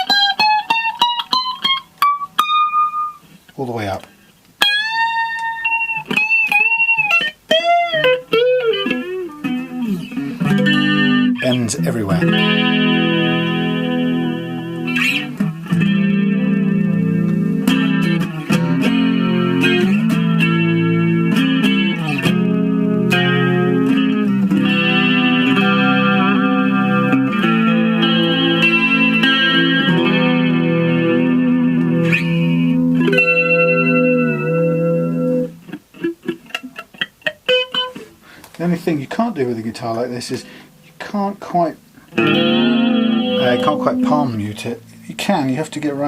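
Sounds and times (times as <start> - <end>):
electric guitar chords strummed: 0.0 - 3.2, 4.6 - 46.0.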